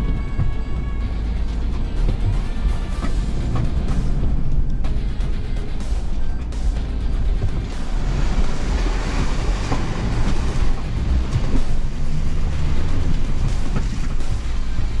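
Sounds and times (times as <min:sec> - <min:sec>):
body and suspension rattling: 0:00.0 - 0:15.0
pickup engine rumbling: 0:00.0 - 0:15.0.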